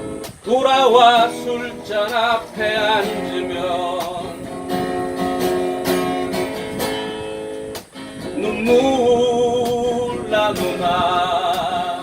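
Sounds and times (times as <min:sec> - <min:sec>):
acoustic guitar strumming: 0:00.0 - 0:12.0
man singing: 0:00.4 - 0:04.6, 0:08.2 - 0:12.0.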